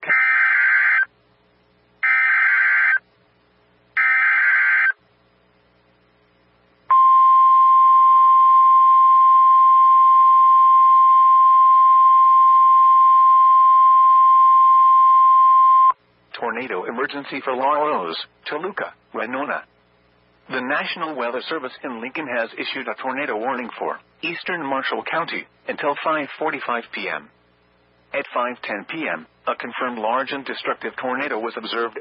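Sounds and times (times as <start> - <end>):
raspy digital data bursts: 2.0 - 3.0, 4.0 - 5.0
steady single-pitch warning beep: 6.9 - 16.0.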